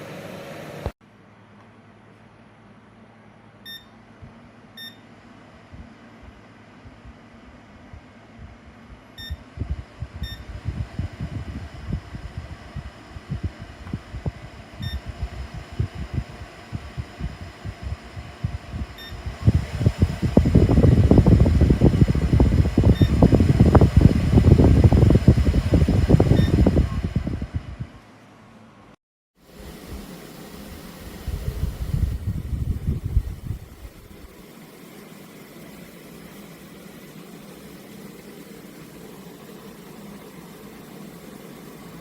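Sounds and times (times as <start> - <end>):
fan air blowing on microphone: 3.2 - 42.0
short electronic beeps: 3.6 - 4.0, 4.8 - 5.0, 9.2 - 9.4, 10.2 - 10.5, 14.8 - 15.0, 19.0 - 19.2.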